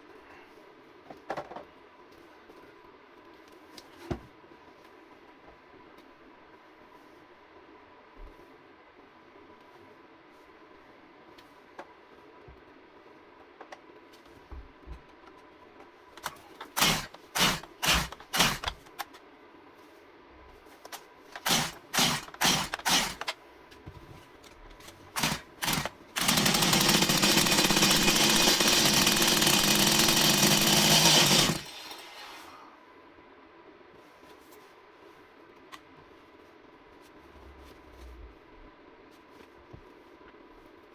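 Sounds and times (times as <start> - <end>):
chainsaw recoil starter pulls: 16.2 - 18.8, 21.4 - 23.3, 25.2 - 31.9
chainsaw engine running: 21.4 - 23.3, 25.2 - 31.9.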